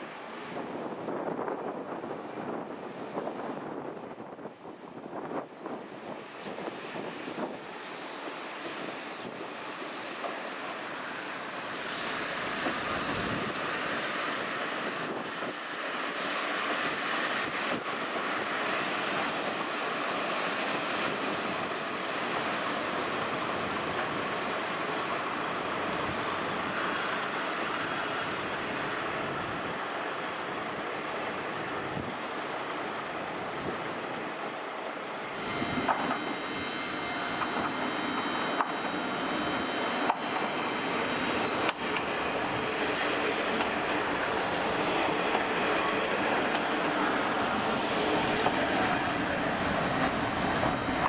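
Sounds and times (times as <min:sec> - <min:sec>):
diesel train rolling: 0:00.0 - 0:51.0.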